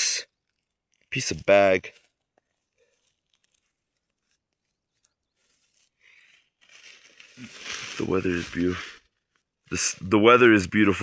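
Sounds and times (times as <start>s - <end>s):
faint bag rustling: 2.0s - 10.0s.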